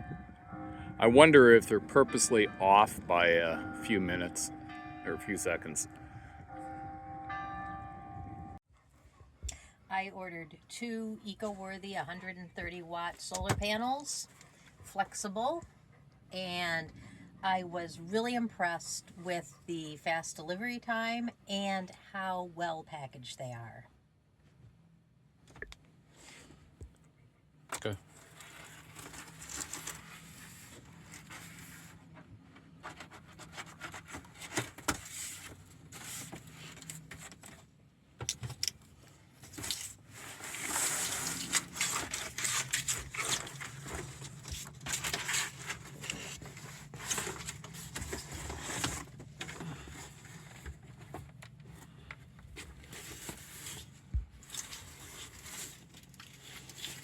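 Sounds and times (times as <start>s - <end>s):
cardboard scraping and crackling: 27.8s - 32.1s, 32.8s - 37.7s, 39.4s - 57.0s.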